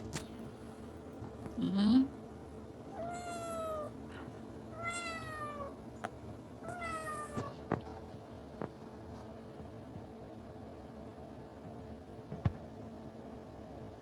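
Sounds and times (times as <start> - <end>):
cat meowing: 2.9 - 3.9, 4.7 - 5.8, 6.6 - 7.6.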